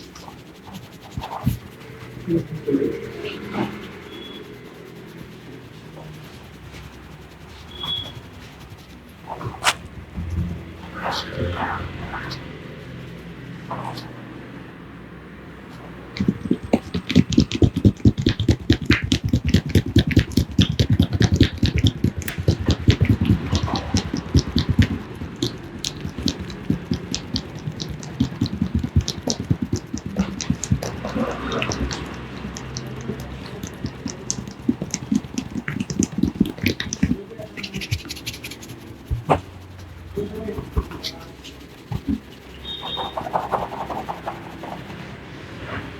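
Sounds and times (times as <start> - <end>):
hands slapping and tapping head: 16.2 - 39.4.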